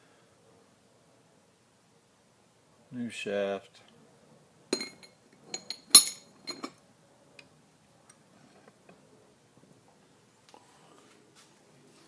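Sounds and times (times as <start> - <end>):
sharp metallic clinks: 4.8 - 6.8.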